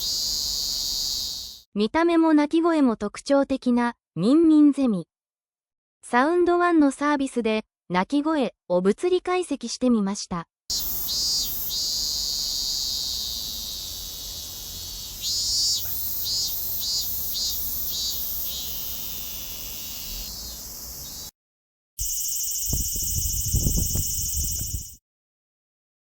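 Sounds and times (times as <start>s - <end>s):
cicada buzzing: 0.0s - 1.6s, 10.7s - 21.3s, 22.0s - 25.0s.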